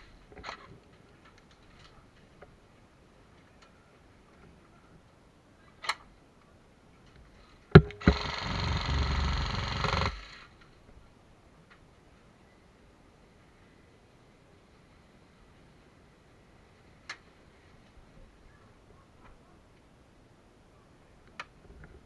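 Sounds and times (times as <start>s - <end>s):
sharp click: 7.8s - 10.4s
airsoft gun full-auto burst: 7.8s - 10.5s.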